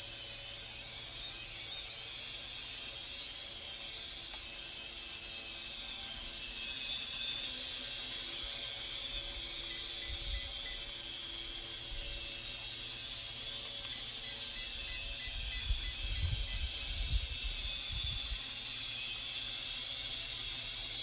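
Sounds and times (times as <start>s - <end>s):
drone propellers whirring: 0.0s - 21.0s
quick electronic beeps: 9.7s - 10.9s, 13.9s - 16.7s.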